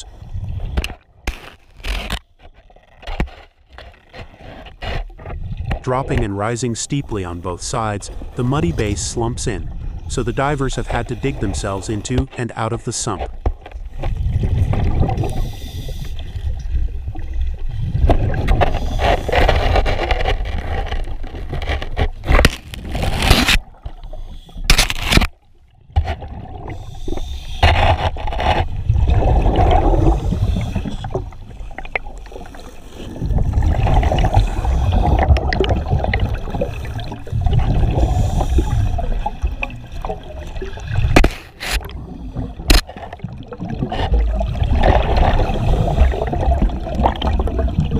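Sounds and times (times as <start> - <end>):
gurgling water: 13.3 - 47.9.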